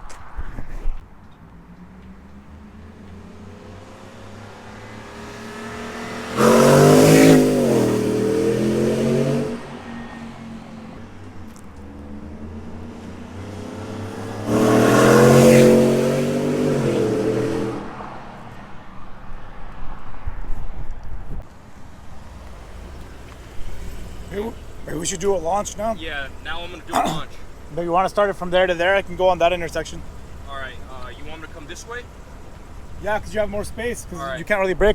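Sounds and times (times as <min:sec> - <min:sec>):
truck engine at full throttle: 0:02.5 - 0:11.0, 0:12.0 - 0:17.9, 0:22.1 - 0:34.9.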